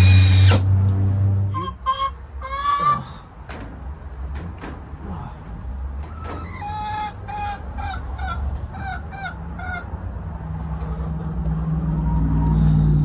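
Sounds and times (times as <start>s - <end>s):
chicken clucking: 1.5s - 3.2s, 6.1s - 9.9s.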